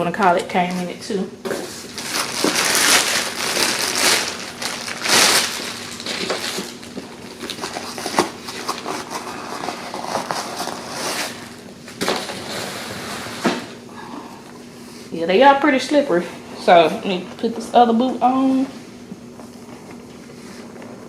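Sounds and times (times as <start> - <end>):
packaging rustling and crinkling: 1.5 - 13.8.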